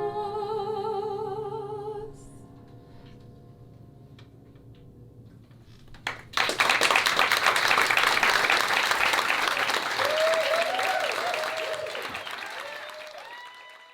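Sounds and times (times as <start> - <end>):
audience applauding: 6.0 - 13.9.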